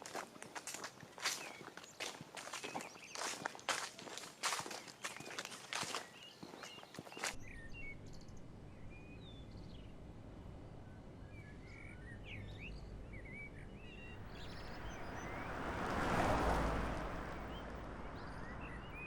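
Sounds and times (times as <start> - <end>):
footsteps: 0.0 - 7.4
small birds chirping: 0.0 - 19.0
low outdoor rumble: 7.4 - 19.0.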